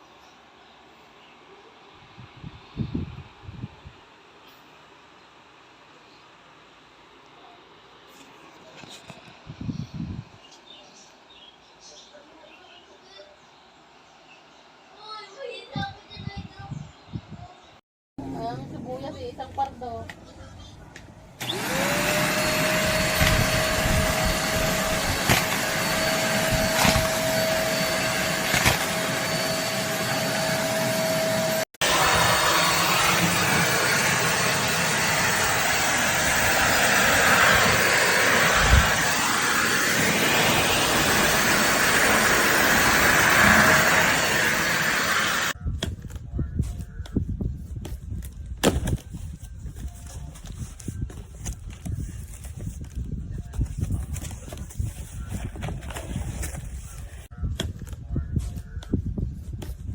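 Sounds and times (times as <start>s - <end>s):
stick vacuum cleaner motor whine: 21.4s - 45.6s
rush of suction: 35.4s - 45.6s.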